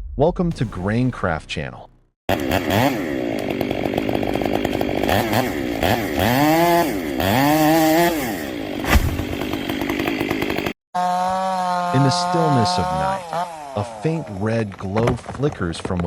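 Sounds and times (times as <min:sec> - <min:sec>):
chainsaw cutting wood: 0:02.3 - 0:15.2.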